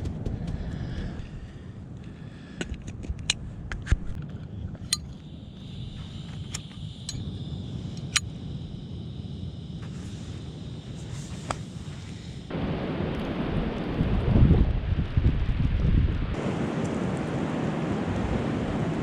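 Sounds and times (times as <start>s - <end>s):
wind rumble on microphone: 0.0s - 19.0s
steady hiss: 4.3s - 12.8s.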